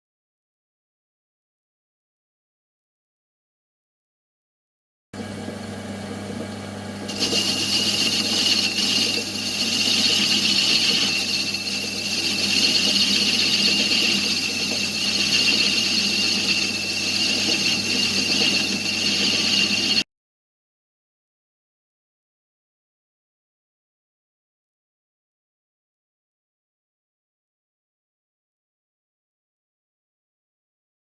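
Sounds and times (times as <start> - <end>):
drive belt squealing: 7.1 - 20.0.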